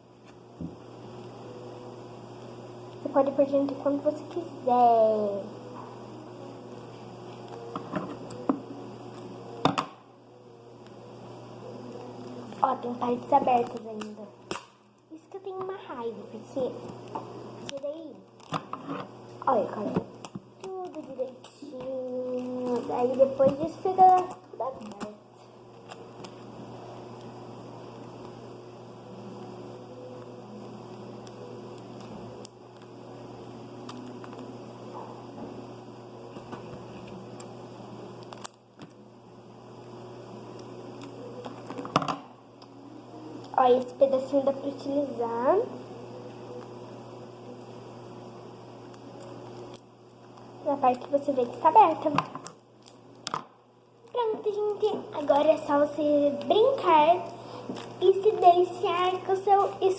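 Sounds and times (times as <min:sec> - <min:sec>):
steady electrical hum: 0:00.0 - 0:59.9
paper toy handling clicks and rustles: 0:20.6 - 0:25.1.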